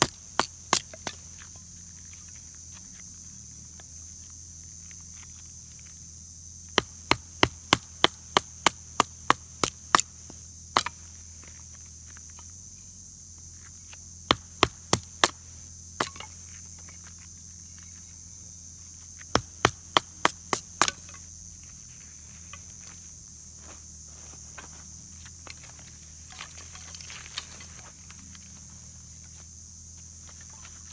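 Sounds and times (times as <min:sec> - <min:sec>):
axe chopping firewood: 0:00.0 - 0:01.6, 0:06.8 - 0:11.2, 0:14.3 - 0:16.4, 0:19.3 - 0:21.2
insects droning: 0:00.0 - 0:30.9.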